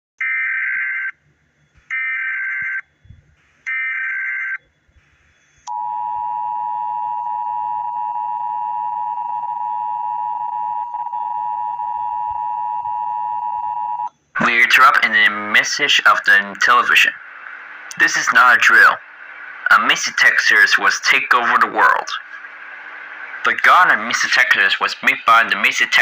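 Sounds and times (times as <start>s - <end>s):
warbling data tones: 10.2s - 26.0s.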